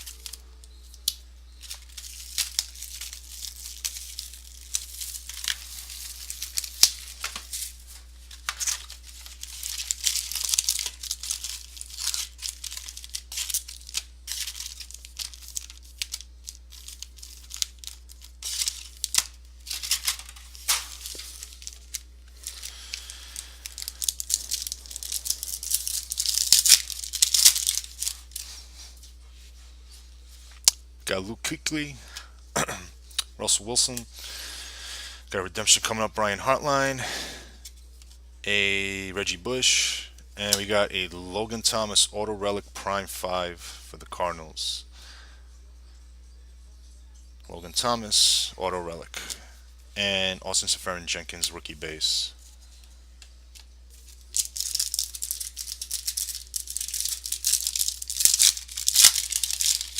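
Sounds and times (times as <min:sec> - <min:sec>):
packaging torn and crinkled: 0:00.0 - 0:28.6, 0:53.5 - 0:59.9.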